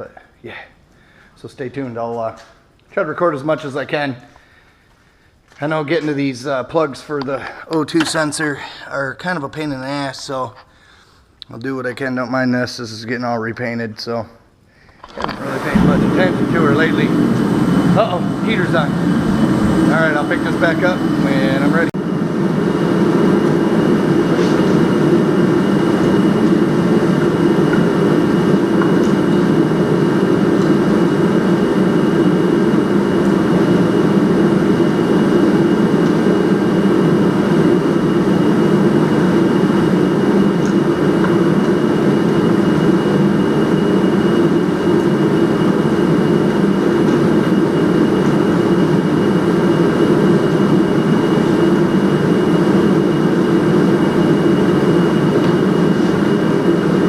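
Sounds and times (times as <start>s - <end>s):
heater humming: 14.8s - 57.0s
faint high whine: 15.2s - 57.0s.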